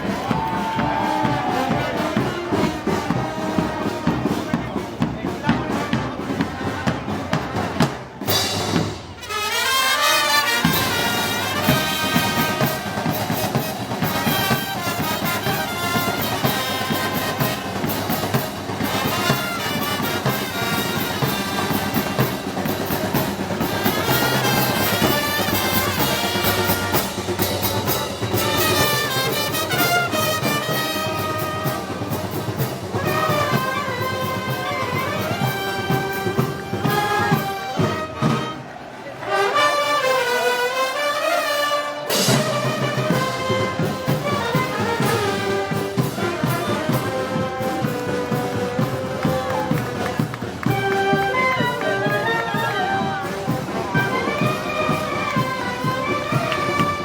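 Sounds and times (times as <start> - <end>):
brass band playing: 0.0 - 57.0
drums and percussion: 0.0 - 57.0
trumpets and trombones: 0.0 - 57.0.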